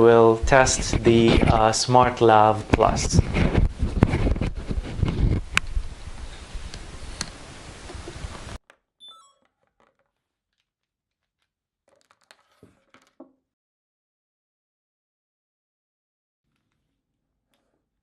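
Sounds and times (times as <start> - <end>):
microphone handling rustling: 0.4 - 8.6.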